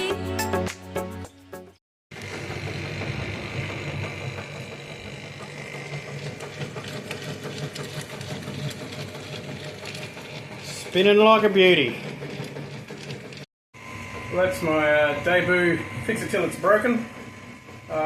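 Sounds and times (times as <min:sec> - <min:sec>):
washing machine running: 0:02.1 - 0:18.0
faint high whine: 0:13.8 - 0:18.0.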